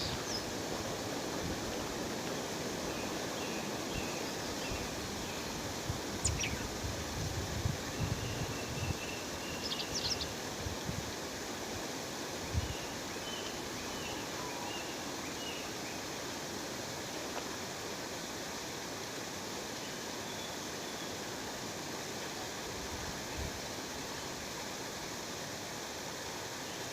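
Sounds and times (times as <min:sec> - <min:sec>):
small birds chirping: 0:06.2 - 0:06.7, 0:08.0 - 0:10.4.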